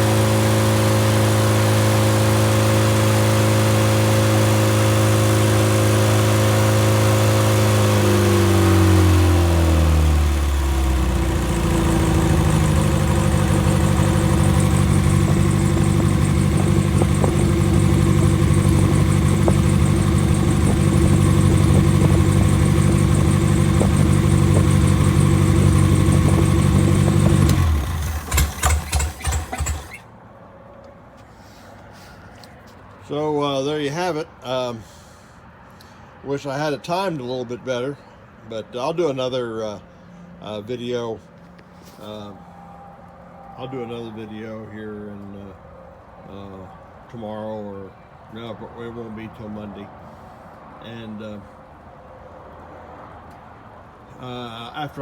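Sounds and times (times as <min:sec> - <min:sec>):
engine running and idling: 0:00.0 - 0:30.1.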